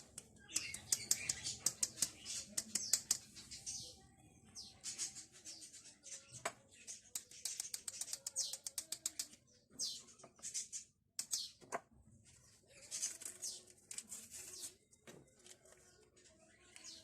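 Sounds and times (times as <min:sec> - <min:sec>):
small bird chirping: 0:00.0 - 0:11.7
sharp clicks: 0:00.1 - 0:03.3, 0:07.2 - 0:09.4.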